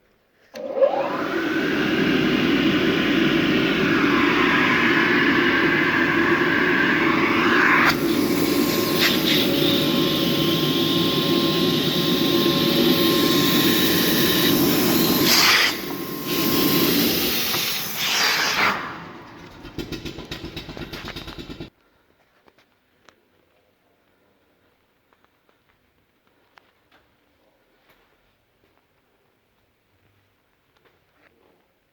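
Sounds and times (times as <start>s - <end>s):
vacuum blower rushing air: 0.6s - 21.7s.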